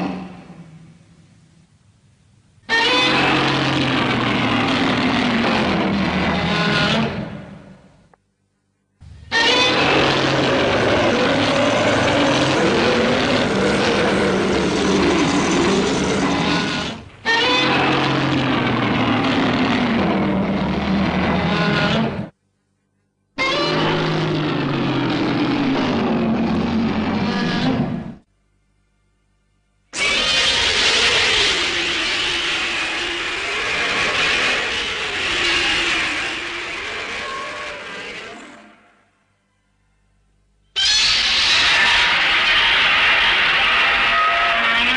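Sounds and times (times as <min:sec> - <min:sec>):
mechanical rumble and hiss: 0:00.0 - 0:08.2, 0:09.0 - 0:22.4.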